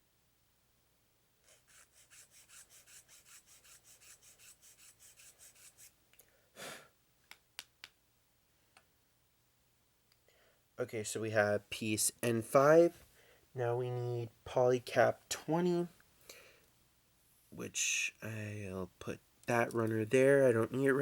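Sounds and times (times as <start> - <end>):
file rasping on plastic: 1.5 - 6.0.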